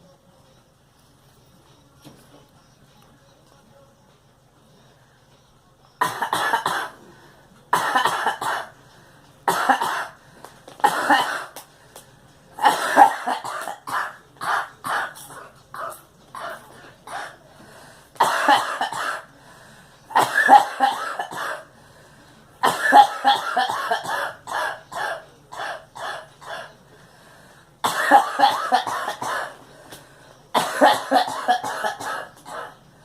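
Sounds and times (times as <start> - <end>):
girl coughing: 6.0 - 7.0, 7.8 - 8.7, 10.9 - 11.5, 12.6 - 15.2, 18.2 - 19.2, 20.2 - 21.6, 22.6 - 26.7, 27.8 - 29.6, 30.6 - 32.8.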